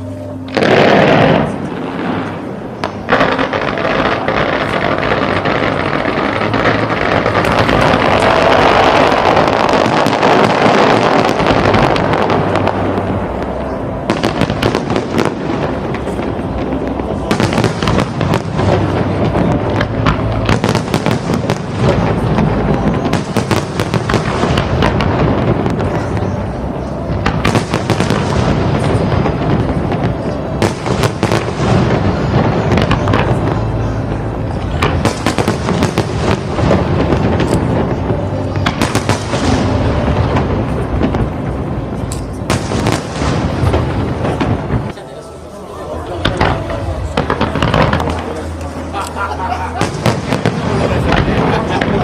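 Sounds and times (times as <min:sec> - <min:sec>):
fireworks bursts and crackling: 0:00.0 - 0:52.0
music: 0:00.0 - 0:52.0.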